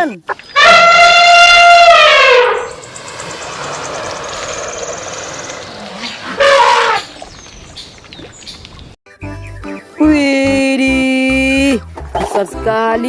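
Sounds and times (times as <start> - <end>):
elephant trumpet blast: 0.6 - 7.2
elephant rumbling call: 0.6 - 7.8.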